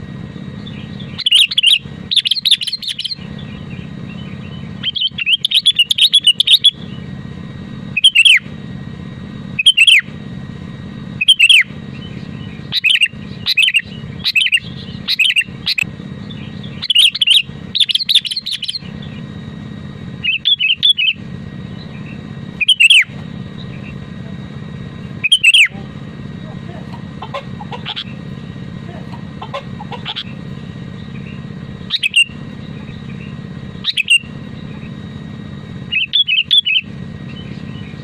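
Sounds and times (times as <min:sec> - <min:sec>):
bulbul singing: 0:00.0 - 0:38.0
steady low hum: 0:00.0 - 0:38.0.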